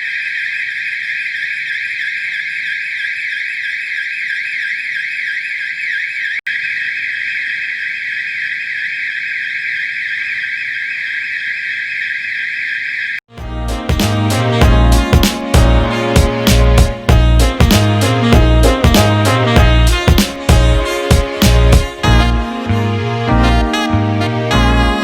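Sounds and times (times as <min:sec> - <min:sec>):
fire alarm warbling tone: 0:00.0 - 0:13.2.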